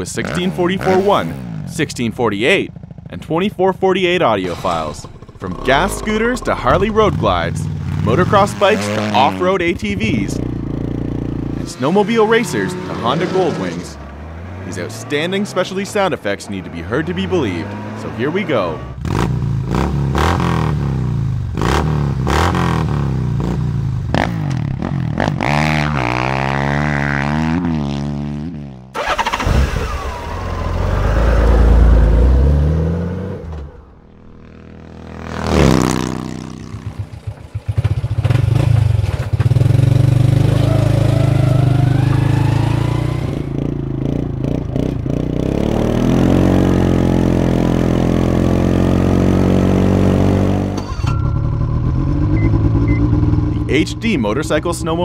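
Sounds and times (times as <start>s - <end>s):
engines revving: 0.0s - 55.0s
loud low rumble: 4.1s - 8.6s, 51.1s - 55.0s
vehicle passing by: 4.4s - 19.8s, 30.3s - 37.4s, 39.6s - 50.8s.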